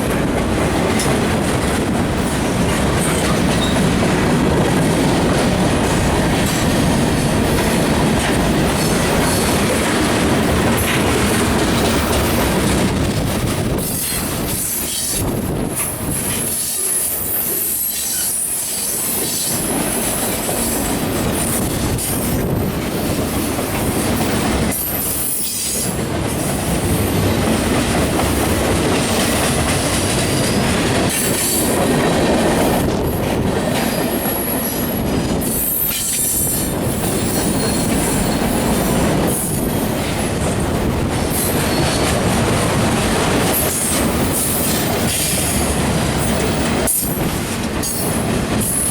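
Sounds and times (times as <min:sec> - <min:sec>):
freight train rolling past: 0:00.0 - 0:48.9.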